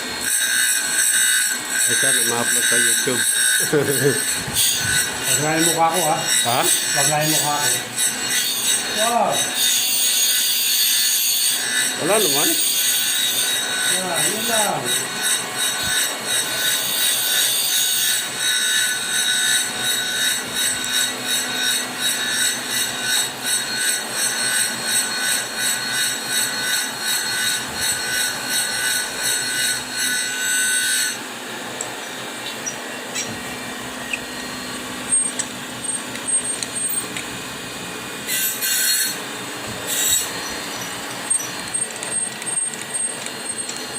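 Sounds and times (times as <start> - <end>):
grinder wheel grinding steel: 0.0 - 43.9
machine running: 31.8 - 43.9.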